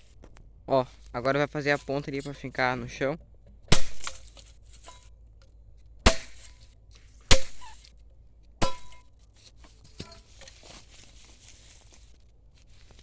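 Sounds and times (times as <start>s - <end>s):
blade chopping bamboo: 3.7s - 5.0s, 6.1s - 7.9s, 8.6s - 9.2s.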